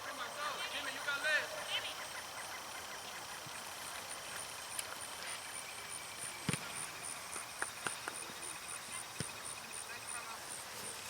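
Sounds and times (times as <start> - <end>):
open-field background noise: 0.0 - 11.0
ball kick thuds: 6.4 - 6.8.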